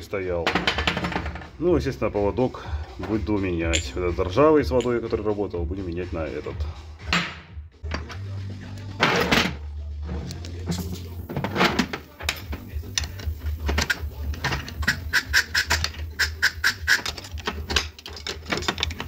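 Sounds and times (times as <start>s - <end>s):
metal clicks and knocks: 0.4s - 1.5s, 10.3s - 19.0s.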